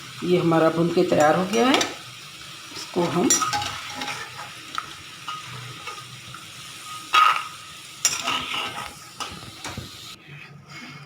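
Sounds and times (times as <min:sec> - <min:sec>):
frying sizzle: 0:00.0 - 0:10.2
metal spoon scraping pan: 0:02.8 - 0:09.9
spoon clinking against pan: 0:03.0 - 0:04.4, 0:06.8 - 0:09.4.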